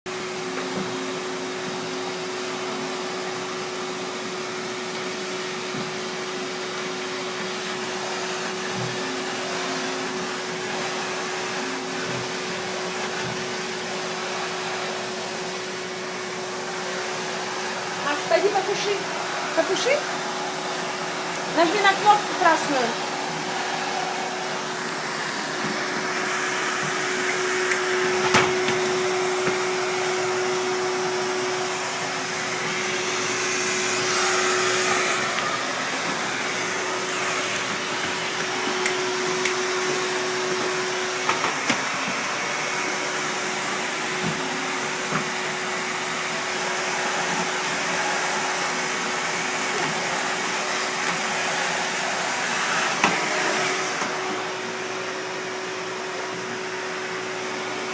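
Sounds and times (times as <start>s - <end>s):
vacuum cleaner running: 0.1s - 57.9s.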